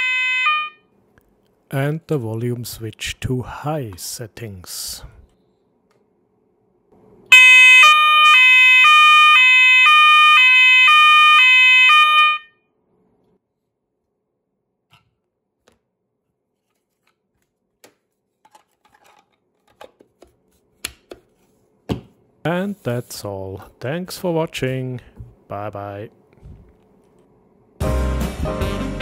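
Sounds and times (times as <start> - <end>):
two-tone fire alarm: 0.0 - 0.8, 7.3 - 12.6.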